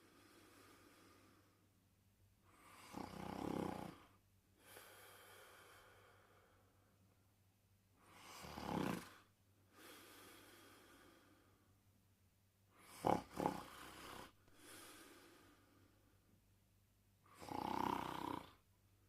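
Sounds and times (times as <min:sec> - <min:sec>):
quiet breathing: 0:00.0 - 0:07.3, 0:07.9 - 0:12.0, 0:12.7 - 0:16.4
person snoring: 0:02.5 - 0:05.0, 0:08.0 - 0:11.3, 0:12.8 - 0:15.6, 0:17.3 - 0:18.6.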